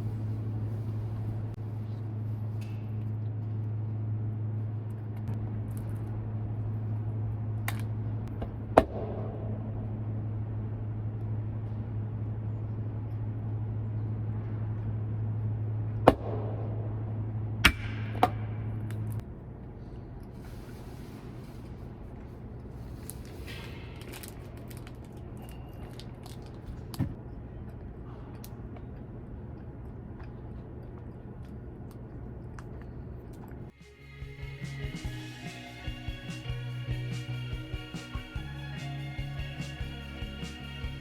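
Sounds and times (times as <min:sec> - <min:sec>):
low mechanical hum: 0:00.0 - 0:41.0.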